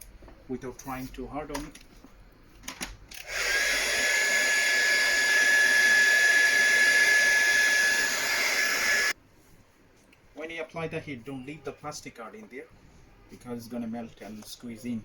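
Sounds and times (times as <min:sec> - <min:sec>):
heat gun fan whine: 0:03.1 - 0:09.2.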